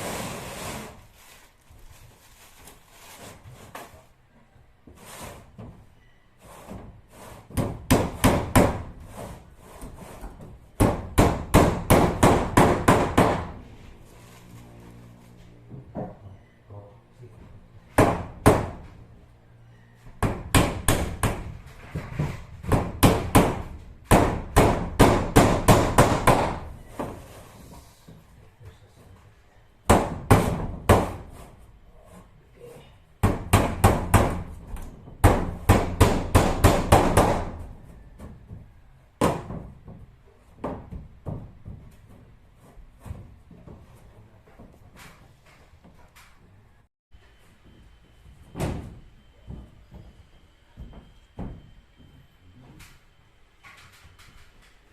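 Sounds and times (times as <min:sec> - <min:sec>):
hammer driving nails: 0:10.8 - 0:13.6, 0:22.6 - 0:26.7, 0:33.2 - 0:37.7.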